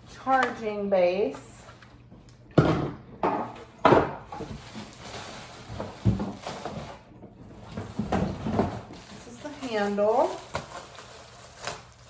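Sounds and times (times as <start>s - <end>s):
packaging rustling and knocking: 3.8s - 12.0s.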